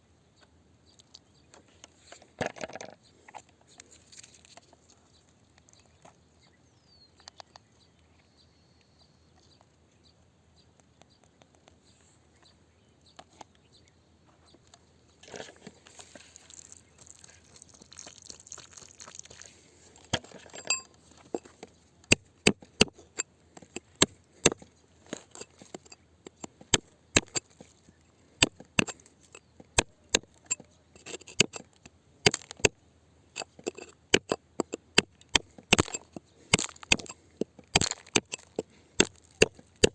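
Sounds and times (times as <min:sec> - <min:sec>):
digging tool striking rock: 0:22.1 - 0:27.8, 0:28.4 - 0:39.9.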